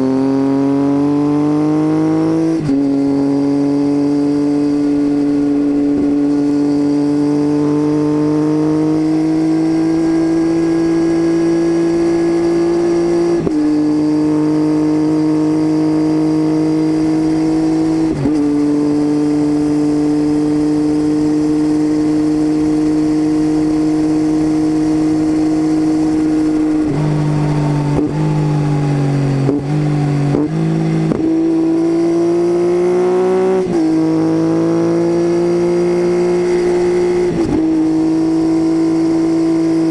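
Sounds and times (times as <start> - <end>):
motorcycle engine droning: 0.0 - 39.9.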